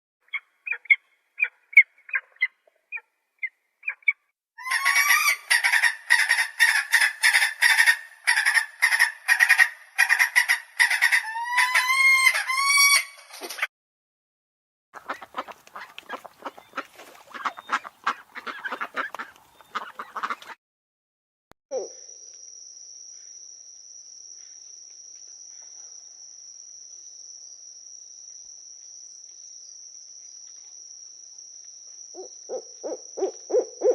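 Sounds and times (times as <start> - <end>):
flock of geese honking: 15.0 - 20.6
rapid harsh bird calls: 15.0 - 20.6
high insect trill: 21.7 - 33.9.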